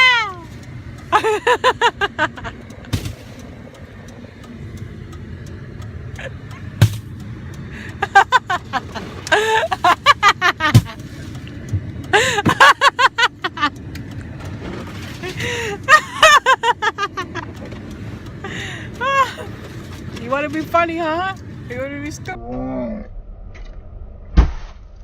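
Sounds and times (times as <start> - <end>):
car engine hum: 0.0 - 23.1
people laughing: 1.1 - 2.6, 8.0 - 10.8, 12.2 - 13.7, 15.5 - 17.5.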